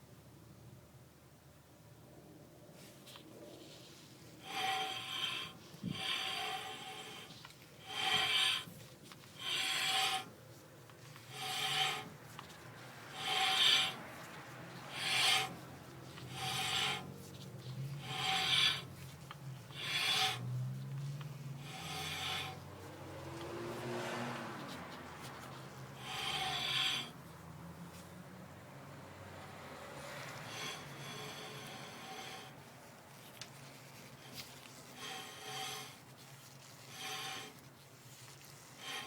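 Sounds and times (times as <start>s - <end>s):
disc brake scraping: 4.4s - 27.2s.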